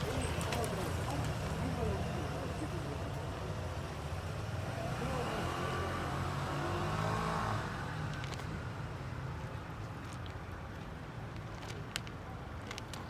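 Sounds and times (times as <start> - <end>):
engine low rumble: 0.0 - 6.9.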